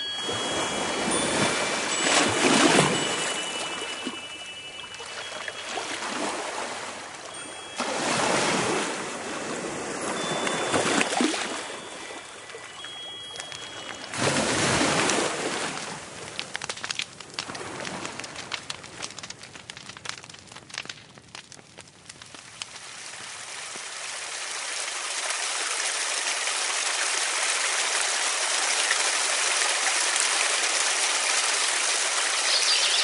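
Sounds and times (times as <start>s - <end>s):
faint chime tones: 0.0s - 14.6s
sea waves washing ashore: 0.0s - 16.5s.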